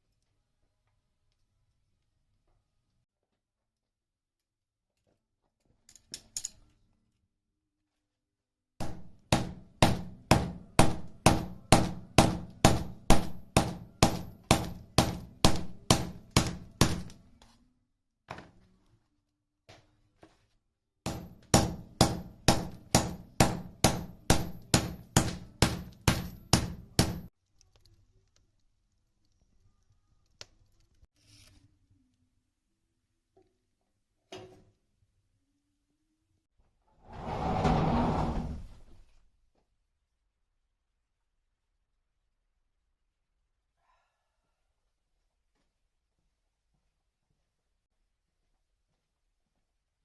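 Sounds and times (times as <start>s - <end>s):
hammer blows ringing on steel: 8.8s - 17.1s, 21.1s - 27.3s.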